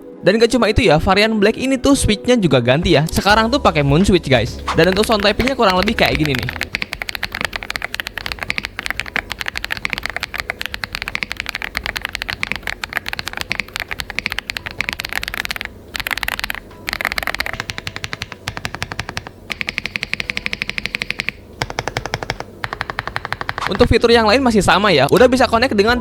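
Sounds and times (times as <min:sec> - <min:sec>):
mechanical keyboard typing: 0:04.6 - 0:23.9.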